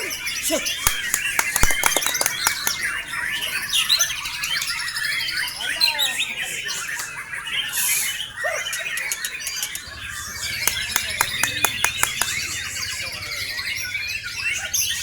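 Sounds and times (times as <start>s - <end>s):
birds chirping and calling: 0.0s - 15.0s
sharp clicks: 0.8s - 2.8s, 10.6s - 12.4s.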